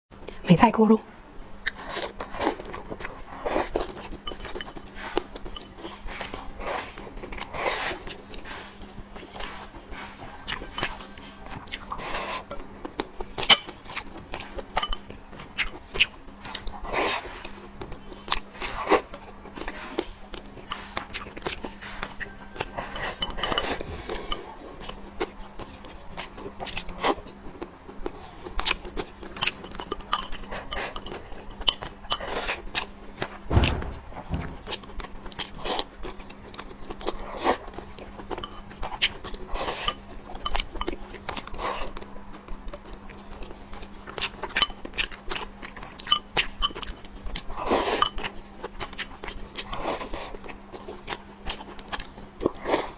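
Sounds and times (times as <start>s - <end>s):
chewing and biting: 1.6s - 52.9s
utensils clicking on dishes: 22.9s - 24.5s
low thump: 33.5s - 34.8s.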